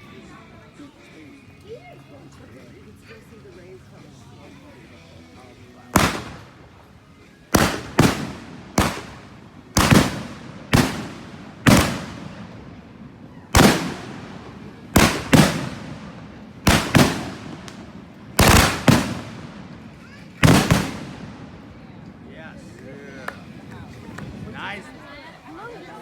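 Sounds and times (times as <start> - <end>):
fireworks bursting: 6.0 - 22.3.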